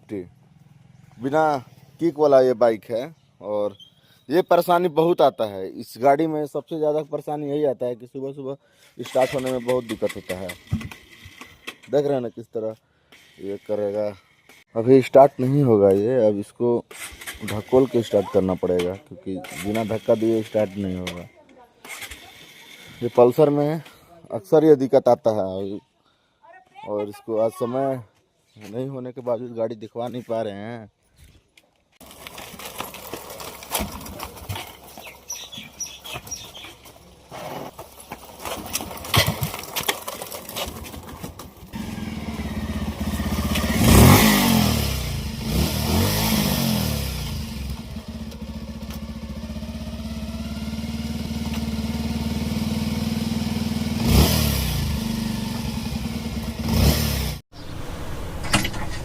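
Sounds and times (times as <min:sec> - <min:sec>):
motorbike engine starting and revving: 0:00.3 - 0:02.3, 0:09.0 - 0:12.0, 0:16.8 - 0:23.7, 0:32.0 - 0:59.0
clicks and scuffing of rolling motorbike: 0:09.0 - 0:12.0, 0:31.2 - 0:41.8, 0:58.3 - 0:59.0.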